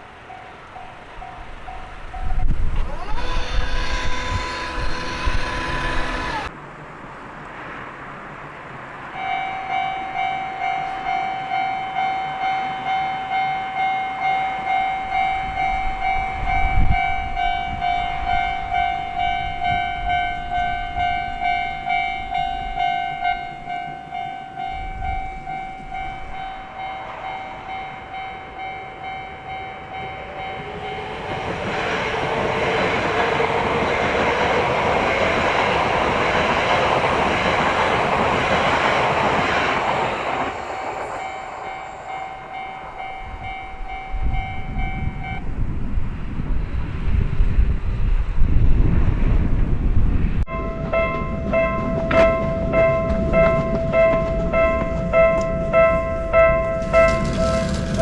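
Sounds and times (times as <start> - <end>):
approaching train noise: 0.0 - 58.0
level crossing alarm ringing: 0.3 - 6.5, 17.8 - 31.3, 38.9 - 45.5
train horn: 2.2 - 6.5.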